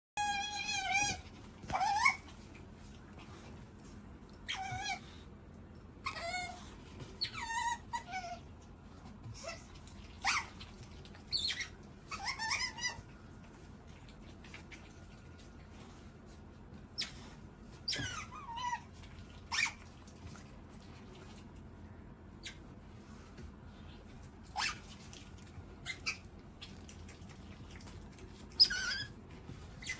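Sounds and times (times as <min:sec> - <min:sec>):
otter squeaking: 0:28.4 - 0:29.9.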